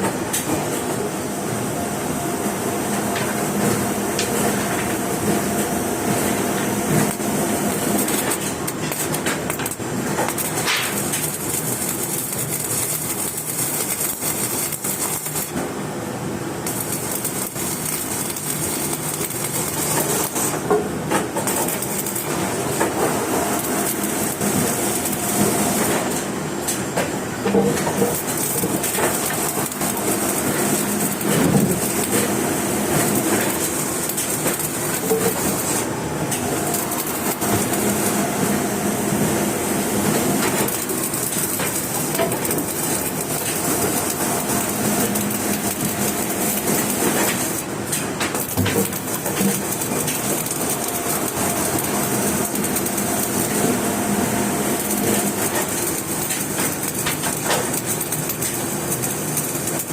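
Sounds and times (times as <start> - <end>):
welding arc crackling: 5.9 - 15.6, 16.6 - 20.6, 21.4 - 26.0, 28.0 - 35.8, 36.7 - 38.2, 39.5 - 53.7, 54.7 - 59.9.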